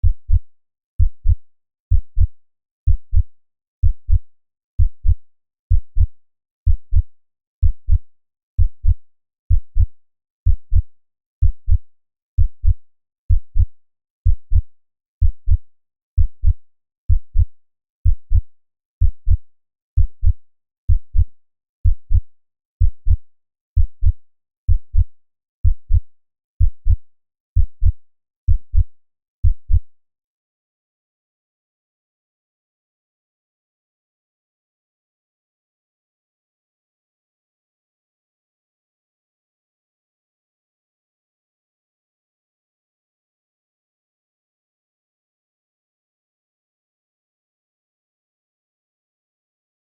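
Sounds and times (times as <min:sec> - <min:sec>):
heartbeat thumps: 0:00.0 - 0:00.4, 0:01.0 - 0:02.3, 0:02.9 - 0:04.2, 0:04.8 - 0:06.1, 0:06.7 - 0:08.0, 0:08.6 - 0:09.9, 0:10.5 - 0:11.8, 0:12.4 - 0:15.6, 0:16.2 - 0:18.4, 0:19.0 - 0:19.4, 0:20.0 - 0:22.2, 0:22.8 - 0:23.2, 0:23.8 - 0:26.0, 0:26.6 - 0:27.0, 0:27.6 - 0:29.8.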